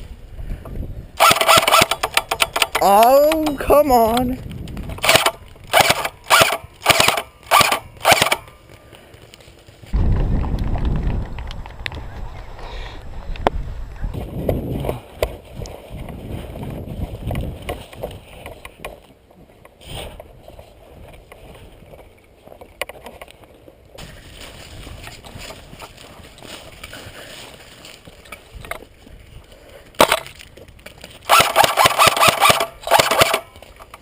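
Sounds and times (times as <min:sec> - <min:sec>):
airsoft gun rattling bursts: 0:01.2 - 0:08.5, 0:31.2 - 0:34.0
sharp crack: 0:05.0 - 0:08.6, 0:31.2 - 0:33.6
footsteps crunching and rustling: 0:06.6 - 0:31.3.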